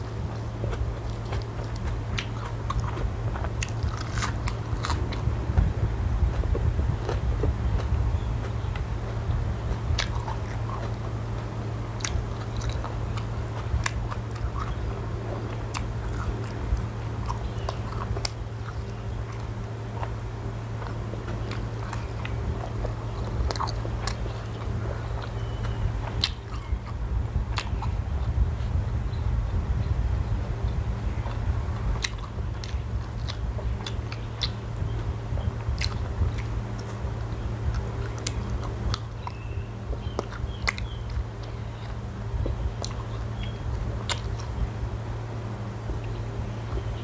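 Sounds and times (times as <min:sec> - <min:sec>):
person biting and chewing: 0:00.0 - 0:05.6, 0:09.7 - 0:28.4, 0:30.7 - 0:34.6, 0:35.4 - 0:44.6
steady low hum: 0:00.0 - 0:47.0.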